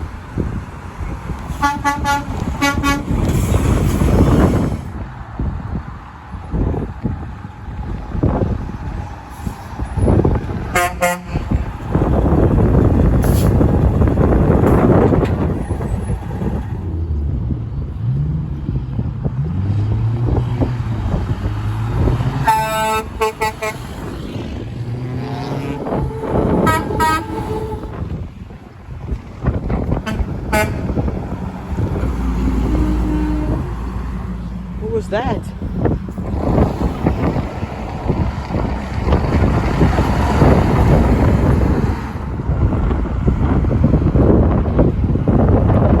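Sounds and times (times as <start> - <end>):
diesel engine climbing in pitch: 0.0 - 46.0
trucks passing on highway: 0.0 - 46.0
air horn toots: 1.5 - 3.4, 10.7 - 11.6, 22.4 - 24.1, 25.2 - 28.2, 30.0 - 31.1, 32.6 - 33.8.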